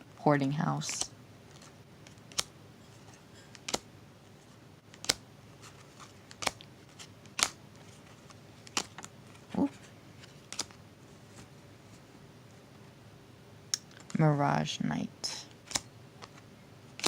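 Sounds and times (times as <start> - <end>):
paper cards snapping: 0.8 - 2.5, 3.5 - 3.9, 4.9 - 5.2, 6.0 - 7.6, 8.2 - 9.1, 10.4 - 10.8, 15.6 - 16.4.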